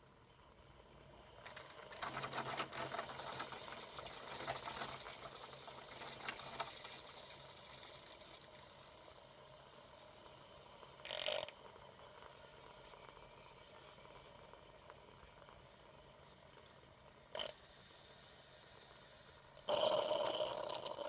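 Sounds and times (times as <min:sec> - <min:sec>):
pump humming: 0:00.0 - 0:21.0
water spitting and gurgling: 0:01.0 - 0:15.5, 0:19.1 - 0:21.0.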